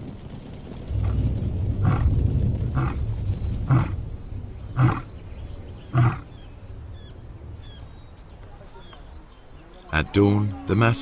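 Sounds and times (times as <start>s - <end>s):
lion roaring and grunting: 1.0s - 4.0s, 4.7s - 6.5s.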